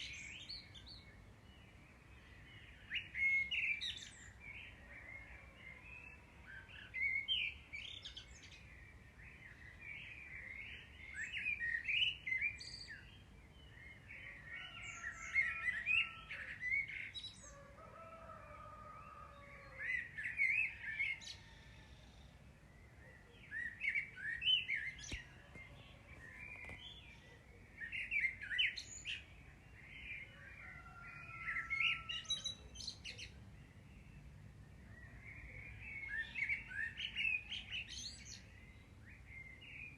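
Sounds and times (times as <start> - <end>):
bird chirping: 19.0 - 39.9.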